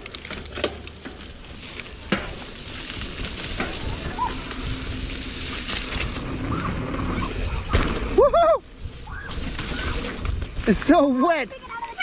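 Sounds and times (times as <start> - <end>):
bike tyres on muddy trail: 0.0 - 12.0
wind rumbling on microphone: 2.0 - 11.2.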